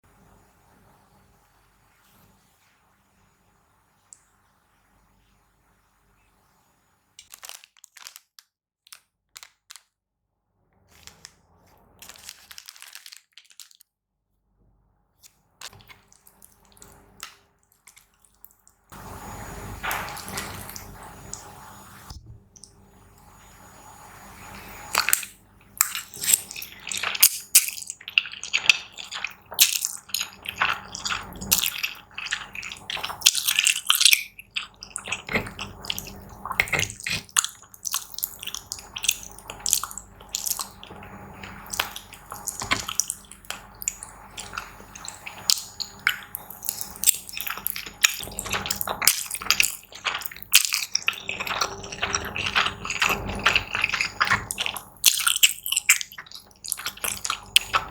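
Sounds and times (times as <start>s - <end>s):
noodle slurping: 24.4s - 57.9s
chewing smacks: 24.9s - 57.9s.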